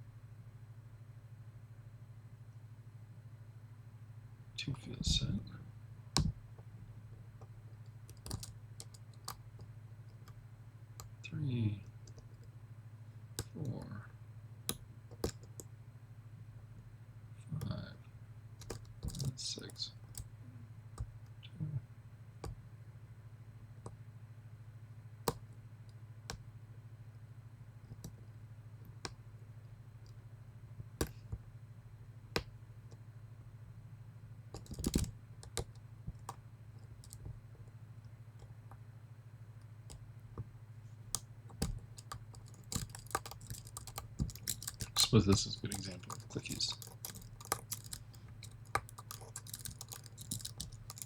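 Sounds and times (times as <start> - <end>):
steady low hum: 0.0 - 51.0
lock pick clicking on pins: 34.5 - 36.4, 41.1 - 51.0.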